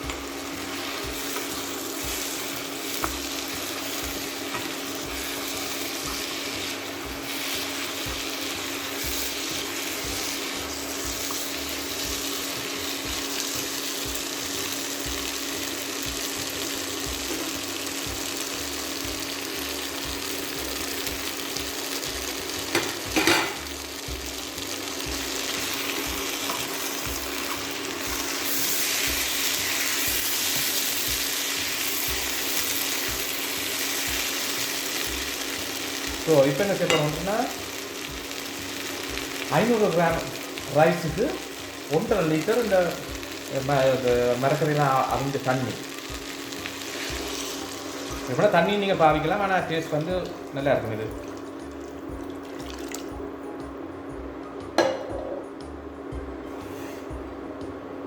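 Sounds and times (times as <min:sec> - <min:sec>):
food sizzling in hot oil: 0:00.0 - 0:53.4
utensil clattering against pan: 0:22.7 - 0:23.6
steady low hum: 0:53.1 - 0:58.0.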